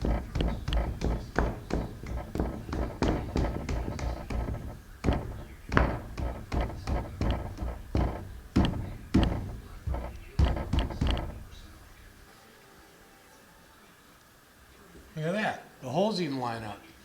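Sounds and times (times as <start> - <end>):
hand taps and thuds on glass: 0.0 - 12.1.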